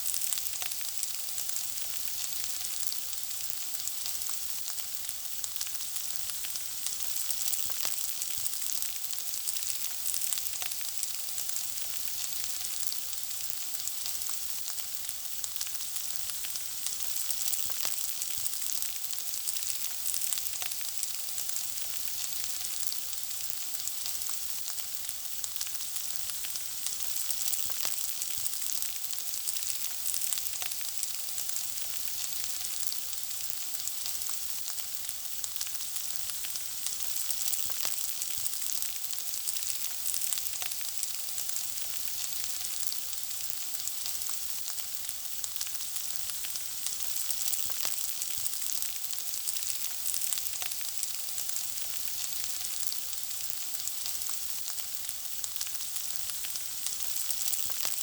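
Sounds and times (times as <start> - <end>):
food frying with crackles: 0.0 - 58.0.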